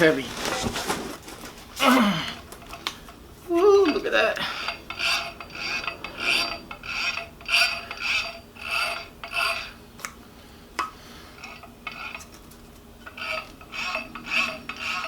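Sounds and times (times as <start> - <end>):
rhythmic rasping strokes: 3.7 - 9.8, 11.4 - 15.0.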